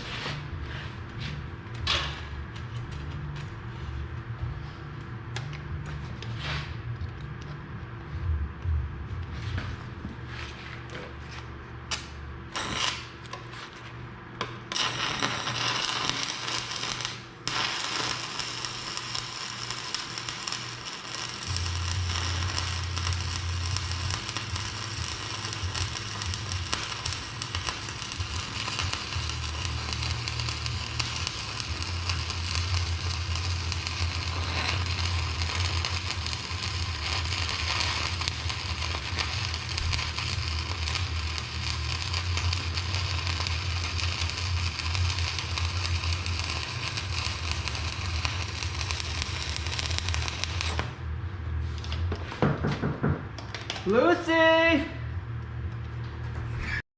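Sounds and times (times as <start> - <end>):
steady low hum: 0.0 - 53.5
welding arc crackling: 11.9 - 51.0.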